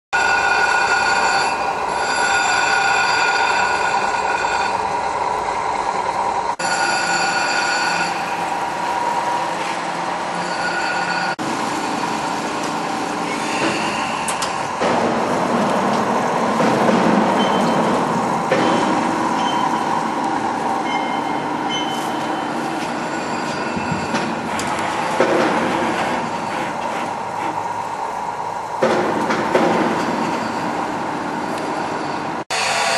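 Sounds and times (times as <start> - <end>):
high-pitched squeals: 0.2 - 5.2, 6.4 - 12.0, 17.3 - 25.2
lathe running: 0.2 - 28.8.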